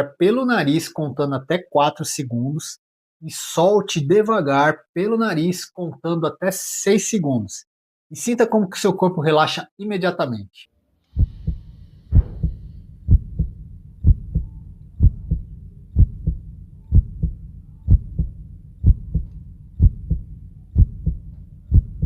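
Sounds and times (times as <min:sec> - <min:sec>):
heartbeat thumps: 0:11.2 - 0:22.0
low steady rumble: 0:11.2 - 0:22.0.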